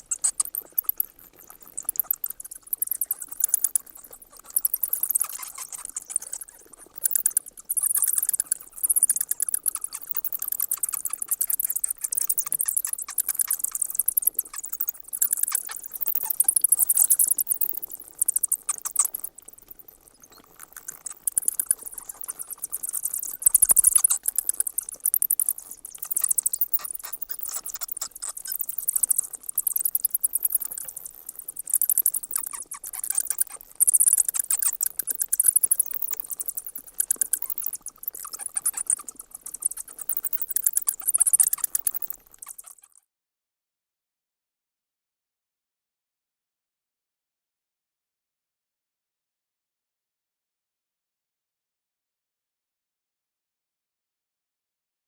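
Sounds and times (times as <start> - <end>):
bats chittering: 0.1 - 42.9.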